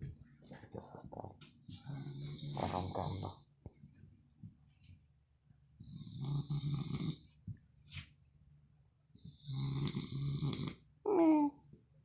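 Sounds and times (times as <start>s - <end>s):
man snoring: 9.4s - 10.8s.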